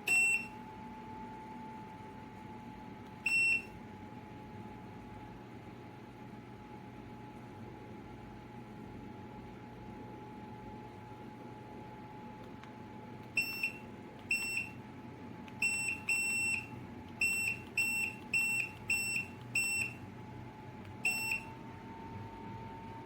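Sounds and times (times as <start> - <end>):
heater beeping: 0.0 - 3.8, 12.4 - 23.0
space heater humming: 0.0 - 23.0.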